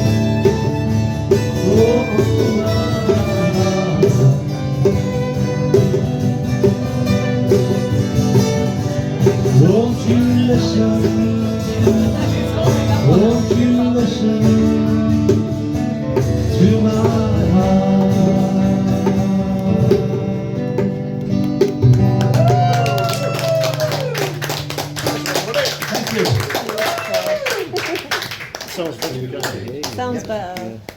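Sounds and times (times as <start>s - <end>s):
sliding lead instrument: 0.0s - 14.2s
country band playing: 0.0s - 29.0s.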